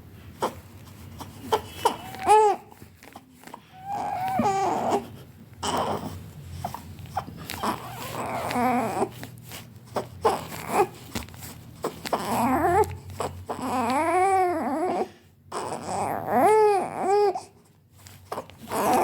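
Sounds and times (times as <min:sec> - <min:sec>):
baby fussing and whimpering: 0:00.3 - 0:17.6, 0:18.2 - 0:19.0
baby crying: 0:01.2 - 0:02.8, 0:03.4 - 0:06.8, 0:07.6 - 0:09.2, 0:11.8 - 0:17.5.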